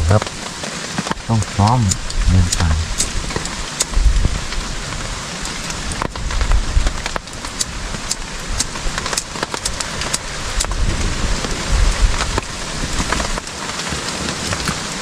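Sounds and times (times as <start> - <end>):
low rumbles: 0.0 - 0.4, 1.2 - 3.4
steady rain: 0.0 - 15.0.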